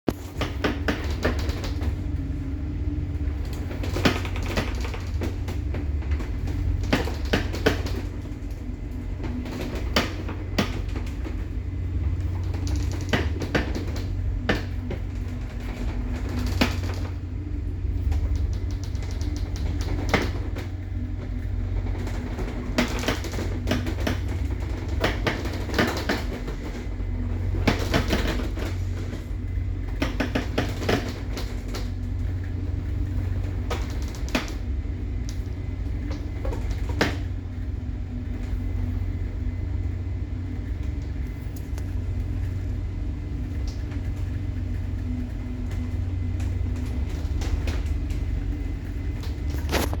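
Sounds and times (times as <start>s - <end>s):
ship hull creaking and knocking: 0.1s - 37.6s
low rumble inside ship: 0.1s - 50.0s.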